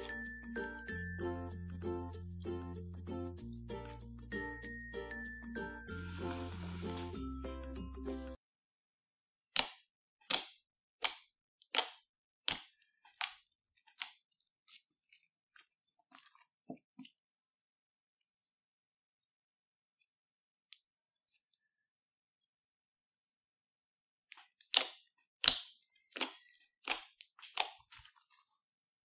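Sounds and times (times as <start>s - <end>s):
slime clicking and popping: 24.6s - 27.9s.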